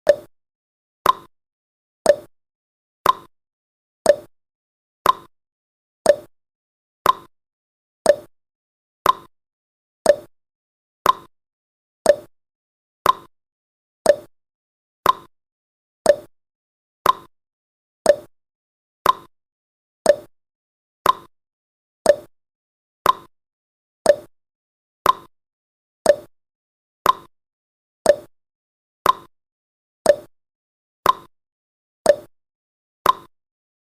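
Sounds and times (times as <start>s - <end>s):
timer ticking: 0.0s - 0.3s, 1.0s - 1.3s, 2.1s - 2.3s, 3.0s - 3.3s, 4.0s - 4.3s, 5.0s - 5.3s, 6.0s - 6.3s, 7.0s - 7.3s, 8.1s - 8.3s, 9.0s - 9.3s, 10.0s - 10.3s, 11.0s - 11.3s, 12.0s - 12.3s, 13.0s - 13.3s, 14.0s - 14.3s, 15.0s - 15.3s, 16.0s - 16.3s, 17.0s - 17.3s, 18.1s - 18.3s, 19.0s - 19.3s, 20.1s - 20.3s, 21.0s - 21.3s, 22.1s - 22.3s, 23.0s - 23.3s, 24.1s - 24.3s, 25.0s - 25.3s, 26.0s - 26.3s, 27.0s - 27.3s, 28.1s - 28.3s, 29.0s - 29.3s, 30.1s - 30.3s, 31.0s - 31.3s, 32.1s - 32.3s, 33.0s - 33.3s.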